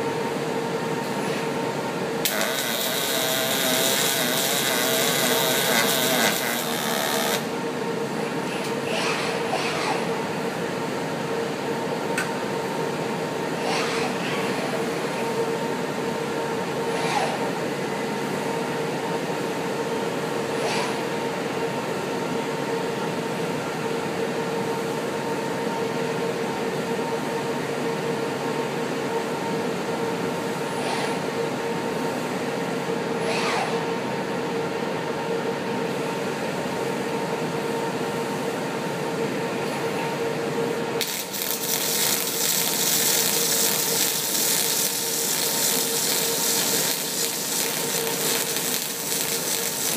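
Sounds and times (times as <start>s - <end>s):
welding robot hum and hiss: 2.2s - 7.6s, 41.0s - 49.9s.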